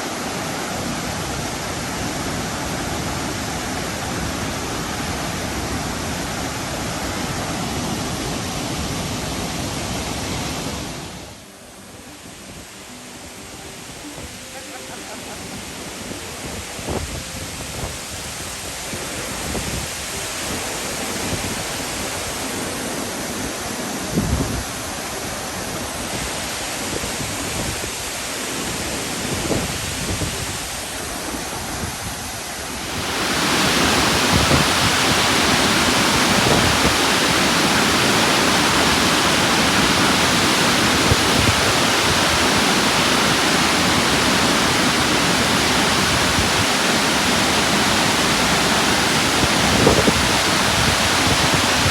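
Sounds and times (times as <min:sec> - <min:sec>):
waterfall roaring: 0:00.0 - 0:51.9.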